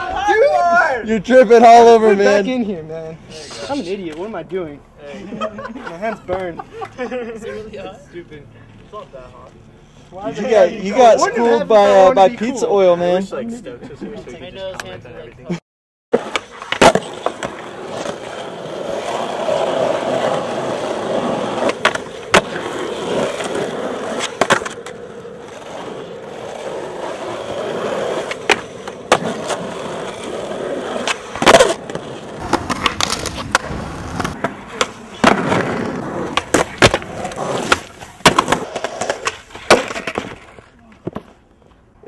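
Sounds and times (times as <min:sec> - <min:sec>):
skateboard pops and landings: 0:16.2 - 0:20.6, 0:21.2 - 0:25.0, 0:28.2 - 0:41.3
skateboard wheels rolling: 0:16.2 - 0:41.9.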